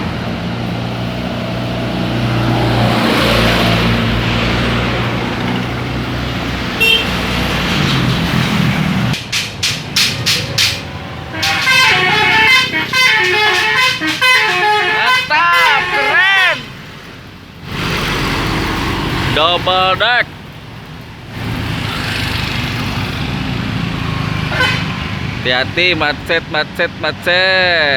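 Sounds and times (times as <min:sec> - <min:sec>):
bus engine running: 0:00.0 - 0:27.9
short sharp horn toots: 0:06.8 - 0:07.1, 0:11.3 - 0:16.7, 0:24.5 - 0:24.9
bus horn playing a tune: 0:06.8 - 0:07.2, 0:11.3 - 0:16.8, 0:24.5 - 0:25.0.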